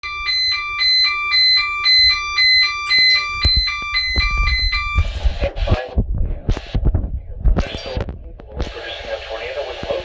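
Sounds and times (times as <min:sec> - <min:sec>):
high-low emergency alert tone: 0:00.0 - 0:05.8
low rumbling noise: 0:00.4 - 0:10.0.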